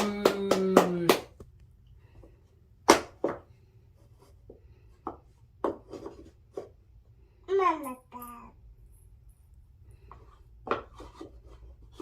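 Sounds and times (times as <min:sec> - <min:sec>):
wooden puzzle pieces knocking: 0:02.8 - 0:03.6, 0:04.5 - 0:06.8, 0:10.1 - 0:12.0.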